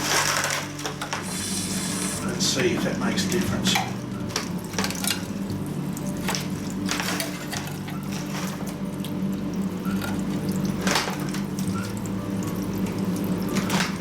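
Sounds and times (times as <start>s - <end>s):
water hissing on hot metal: 0.0s - 14.0s
lathe humming: 1.2s - 6.0s.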